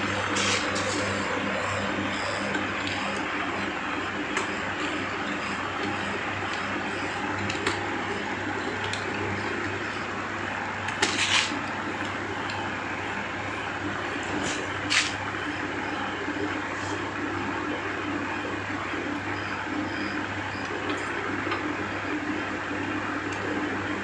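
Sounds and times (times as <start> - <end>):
box fan running: 0.0 - 24.0.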